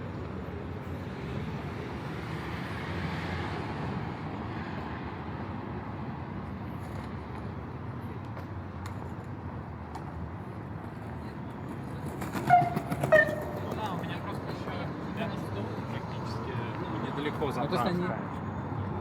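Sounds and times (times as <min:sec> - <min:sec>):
city road traffic: 0:00.0 - 0:19.0.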